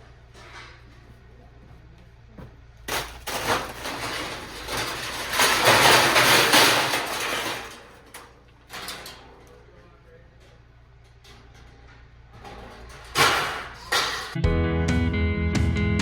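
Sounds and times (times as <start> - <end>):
scrap metal impacts: 2.8 - 9.6, 10.5 - 14.4
scrap metal rattling scrape: 2.9 - 9.4, 11.3 - 14.4.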